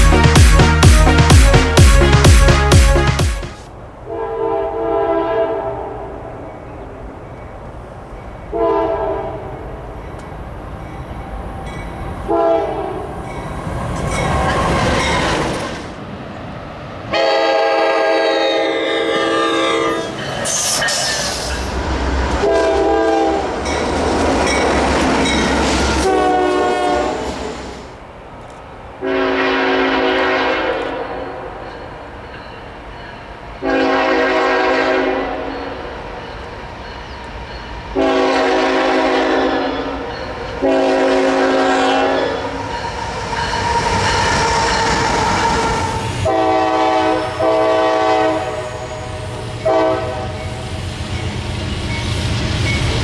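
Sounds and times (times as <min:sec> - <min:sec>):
train rumble and clatter: 0:00.0 - 0:53.0
locomotive air horn blasts: 0:02.0 - 0:06.0, 0:08.5 - 0:09.4, 0:12.3 - 0:13.1, 0:17.1 - 0:20.7, 0:22.2 - 0:23.6, 0:26.0 - 0:27.4, 0:29.0 - 0:31.3, 0:33.6 - 0:35.5, 0:38.0 - 0:45.1, 0:46.2 - 0:50.5.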